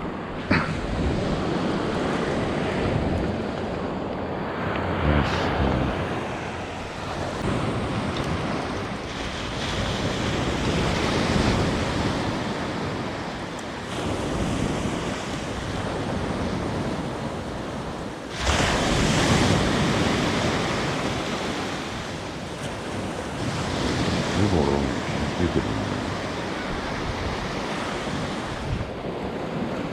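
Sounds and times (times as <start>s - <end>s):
surf breaking on beach: 0.1s - 29.9s
wind on microphone: 22.8s - 29.9s.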